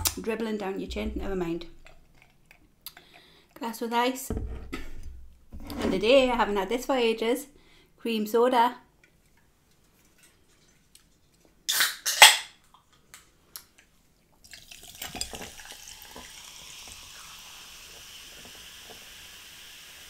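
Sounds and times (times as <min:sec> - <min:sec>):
soda bottle opening hiss: 0:11.7 - 0:12.3, 0:15.9 - 0:20.0
carbonation fizzing: 0:14.4 - 0:20.0
ice clinking in glass: 0:14.5 - 0:17.0.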